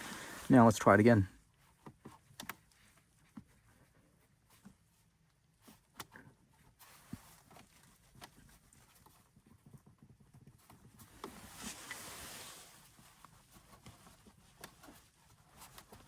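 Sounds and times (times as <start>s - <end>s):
soft rubbing: 10.8s - 16.0s.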